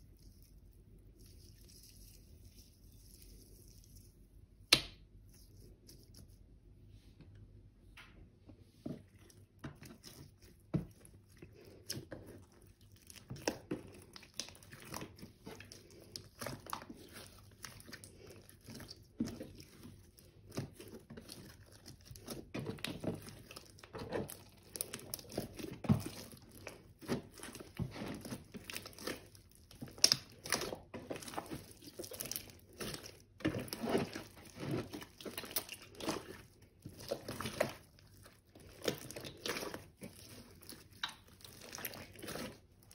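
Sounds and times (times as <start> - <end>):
slime squished by hand: 9.0 - 42.9.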